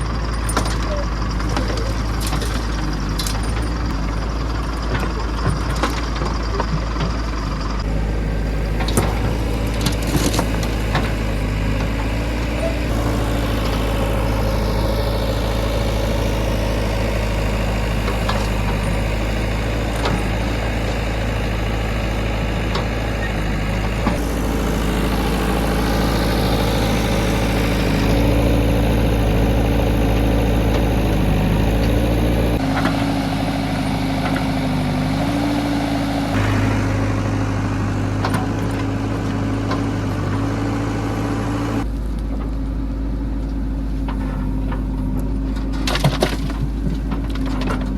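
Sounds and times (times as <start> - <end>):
heavy diesel engines running: 0.0 - 47.9.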